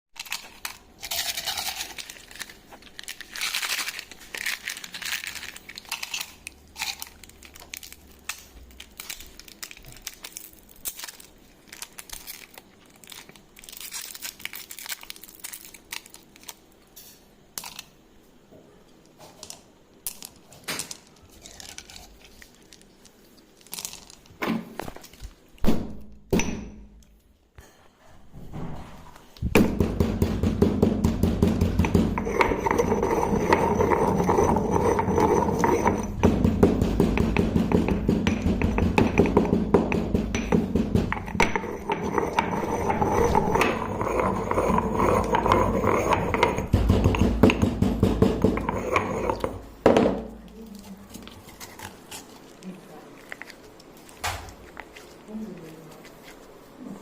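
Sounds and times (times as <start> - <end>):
wrappers crinkling and tearing: 0.2 - 16.8, 20.9 - 25.6, 50.5 - 57.0
loud thumps: 29.4 - 32.2, 36.1 - 41.6
taps and knocks: 29.6 - 32.9, 35.5 - 42.1, 46.2 - 48.8.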